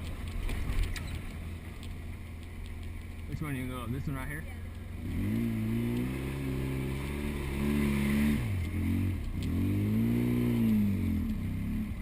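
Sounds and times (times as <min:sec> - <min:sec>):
off-road vehicle engine revving: 0:03.0 - 0:12.0.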